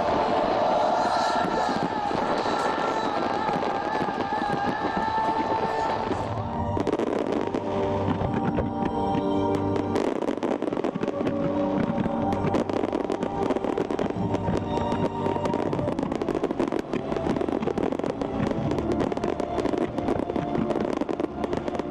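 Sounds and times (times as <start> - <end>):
fireworks crackling and popping: 0.0 - 21.9
music playing: 0.0 - 21.9.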